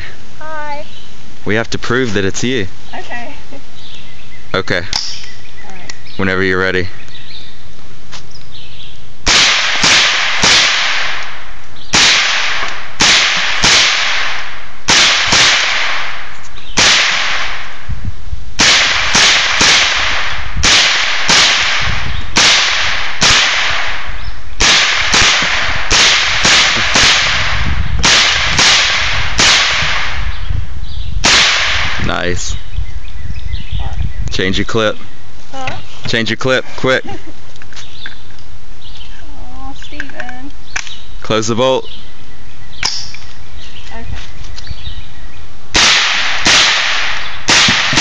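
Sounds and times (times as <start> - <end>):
rifle shots with echo: 9.3 - 17.8, 18.6 - 30.4, 31.2 - 32.4, 45.8 - 48.0.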